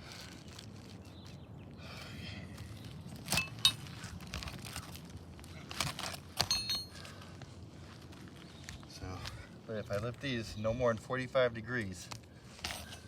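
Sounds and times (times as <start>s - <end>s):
metallic clinks and scrapes: 3.3s - 3.9s, 6.4s - 7.1s, 12.6s - 13.0s.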